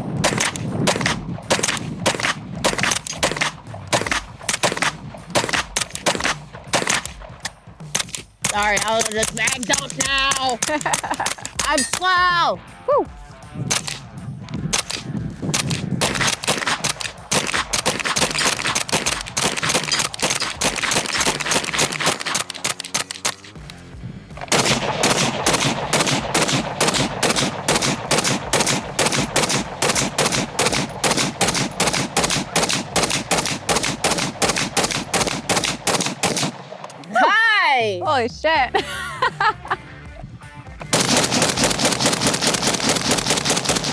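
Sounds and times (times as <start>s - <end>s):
rapid gunshots: 0.0s - 12.2s, 13.6s - 37.0s, 40.9s - 43.9s
background music: 0.0s - 43.9s.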